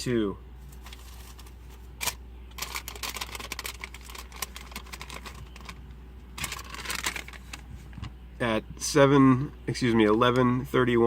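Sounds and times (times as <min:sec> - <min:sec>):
paper receipts crinkling: 0:00.6 - 0:08.0.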